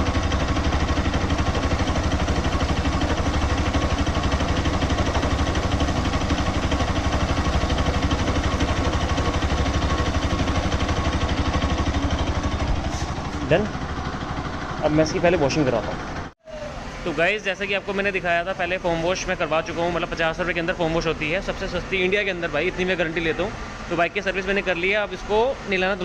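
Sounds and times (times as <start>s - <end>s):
engine idling: 0.0s - 26.0s.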